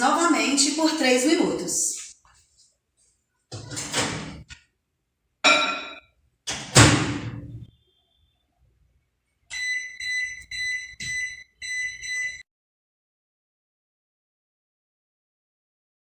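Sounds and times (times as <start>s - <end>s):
microwave door opening and shutting: 3.6s - 4.5s, 6.5s - 7.6s
short electronic beeps: 9.5s - 12.4s.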